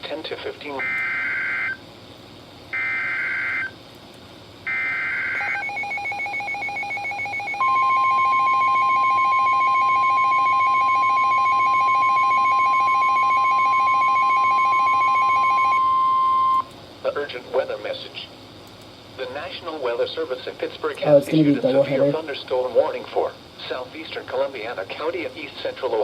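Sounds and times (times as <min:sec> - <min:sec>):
steady alert tone: 0:21.0 - 0:22.2.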